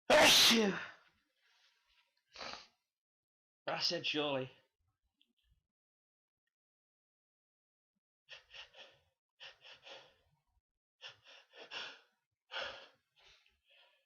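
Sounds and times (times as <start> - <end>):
person gasping before a sneeze: 0.1 - 1.0.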